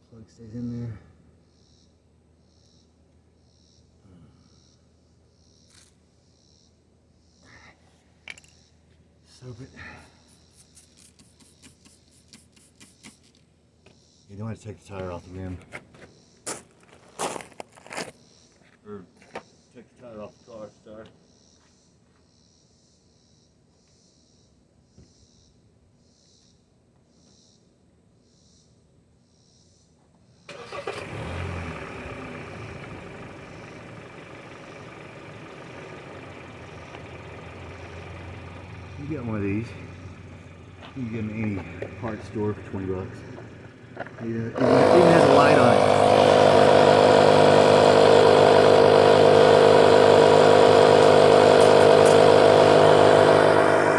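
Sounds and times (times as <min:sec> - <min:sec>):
motor running: 0:30.7 - 0:53.9.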